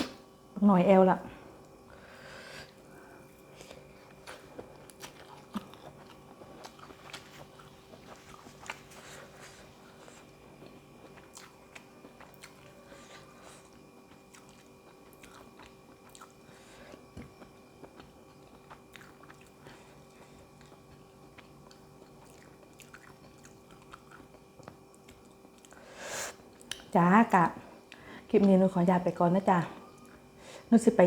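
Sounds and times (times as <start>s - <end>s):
person chewing food: 2.7s - 26.8s.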